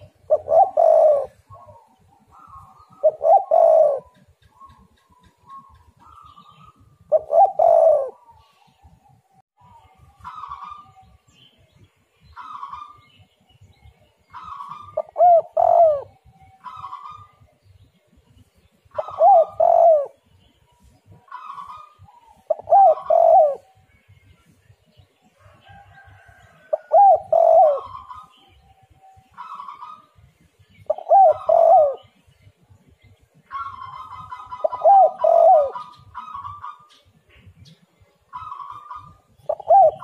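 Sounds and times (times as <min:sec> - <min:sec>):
dove cooing: 0:00.0 - 0:09.0, 0:14.3 - 0:17.5, 0:18.9 - 0:20.2, 0:21.2 - 0:23.8, 0:25.7 - 0:28.6, 0:29.2 - 0:30.1, 0:30.8 - 0:32.2, 0:33.5 - 0:37.0, 0:38.3 - 0:40.0.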